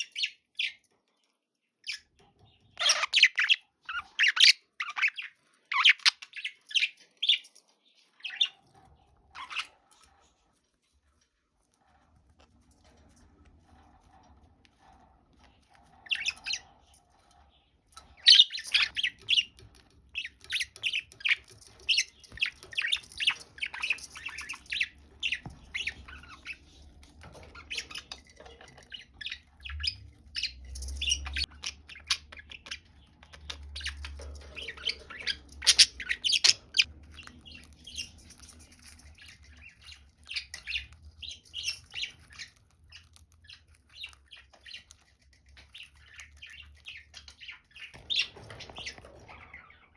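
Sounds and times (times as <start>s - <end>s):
budgerigars chirping: 1.8s - 7.5s, 8.2s - 8.6s, 9.4s - 9.8s, 16.0s - 16.7s, 18.0s - 49.9s.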